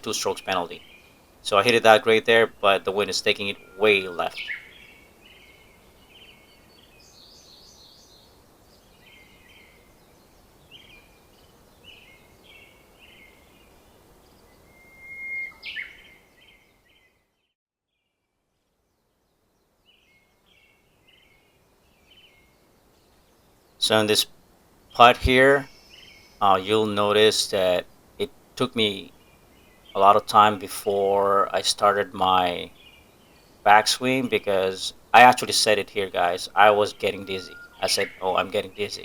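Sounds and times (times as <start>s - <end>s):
small birds chirping: 0.0s - 17.3s, 18.9s - 39.0s
faint outdoor hiss: 0.0s - 39.0s.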